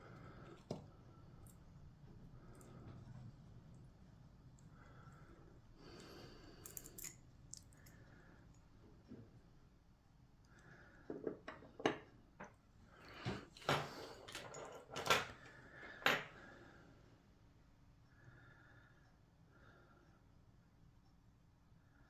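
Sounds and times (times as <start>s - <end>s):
small metal parts clicking: 6.6s - 7.9s.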